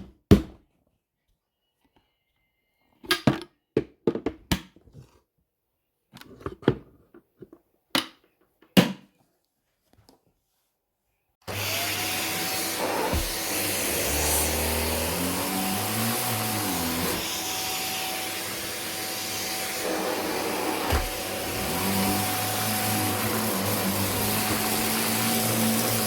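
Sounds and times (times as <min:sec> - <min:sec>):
vacuum cleaner running: 0:11.4 - 0:26.0.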